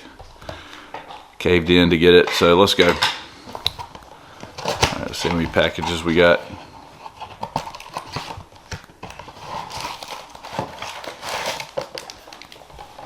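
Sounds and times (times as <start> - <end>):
cardboard and packs rustling: 2.8 - 13.0.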